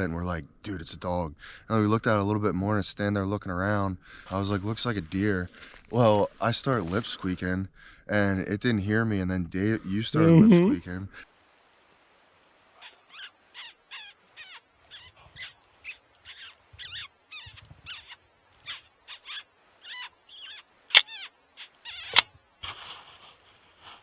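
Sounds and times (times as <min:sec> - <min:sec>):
short high lip squeaks: 0:12.8 - 0:22.4.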